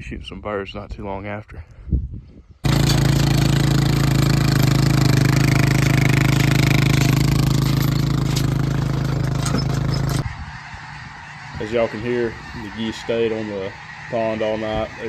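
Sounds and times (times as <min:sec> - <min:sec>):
engine running steadily: 0:02.6 - 0:10.2.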